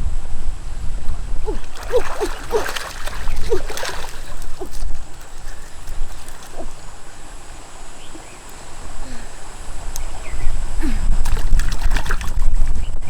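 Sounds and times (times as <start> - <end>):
water splashing and sloshing: 1.4 - 12.9.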